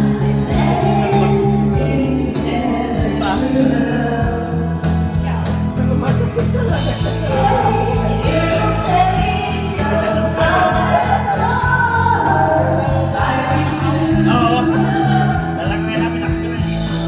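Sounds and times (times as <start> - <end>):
person singing: 0.0 - 5.0, 6.8 - 17.0
steady bass line: 0.0 - 17.0.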